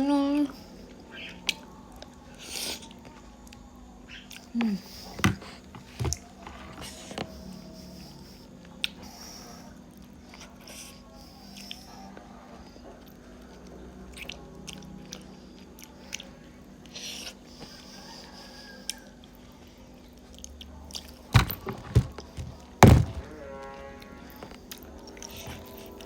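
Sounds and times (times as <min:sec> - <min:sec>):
chewing and wet smacking: 0:13.0 - 0:17.8, 0:18.8 - 0:21.2
loud knocks: 0:21.4 - 0:23.3.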